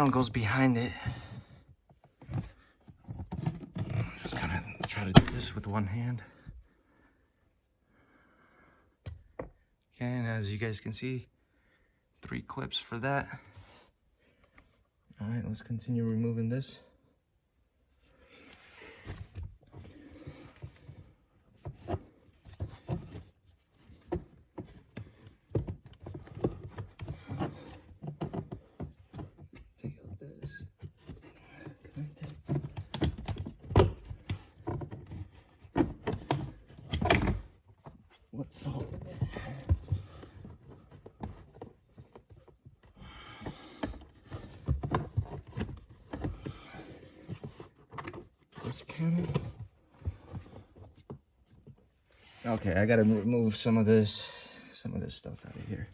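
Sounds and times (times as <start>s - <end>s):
plastic trim panel clicking: 5.2s - 5.5s.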